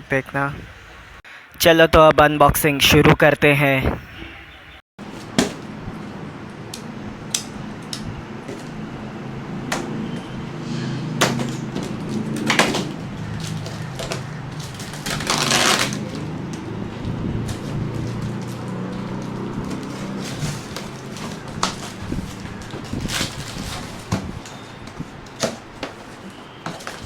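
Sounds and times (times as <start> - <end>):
cardboard flaps knocking and clicking: 5.0 - 5.7, 11.2 - 16.0, 19.6 - 27.0
packaging rustling: 11.2 - 16.3, 17.4 - 27.0.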